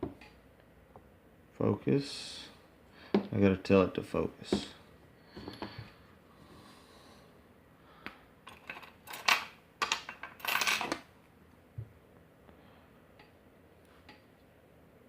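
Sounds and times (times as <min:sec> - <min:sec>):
metal lock parts clicking: 0:08.5 - 0:11.0.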